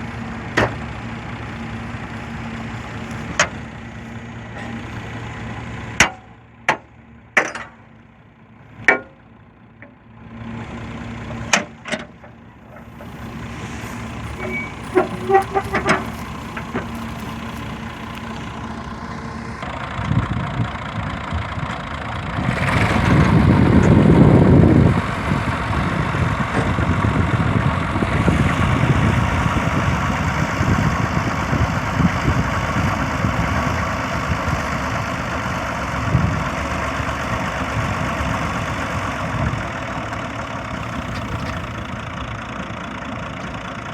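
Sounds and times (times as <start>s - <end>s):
tractor diesel engine: 0.0s - 43.9s
chopper blower running: 12.6s - 20.0s.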